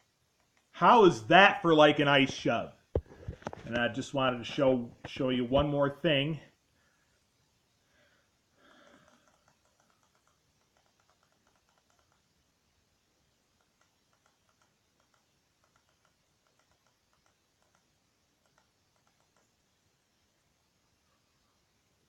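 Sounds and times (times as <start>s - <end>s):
typing on a computer keyboard: 8.8s - 12.3s, 13.6s - 19.6s.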